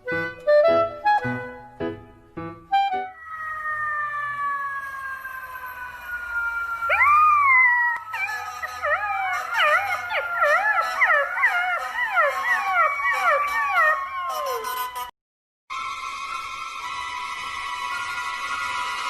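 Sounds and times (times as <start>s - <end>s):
dog howling: 3.2s - 14.7s.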